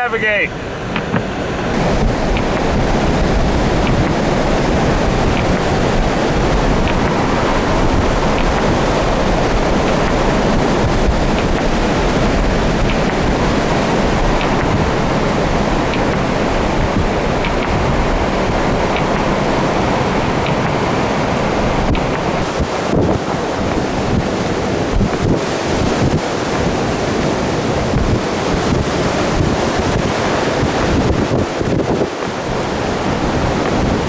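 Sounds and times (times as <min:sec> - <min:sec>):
blizzard wind on microphone: 0:00.0 - 0:34.0.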